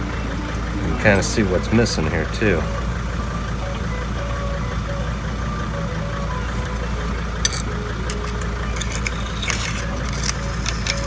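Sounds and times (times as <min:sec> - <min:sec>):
van engine idling: 0:00.0 - 0:11.0
light clicks and scrapes: 0:05.7 - 0:11.0.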